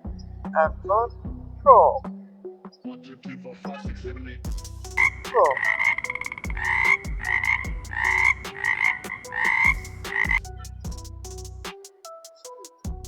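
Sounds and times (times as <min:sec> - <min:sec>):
frog croaking: 0:05.0 - 0:10.4.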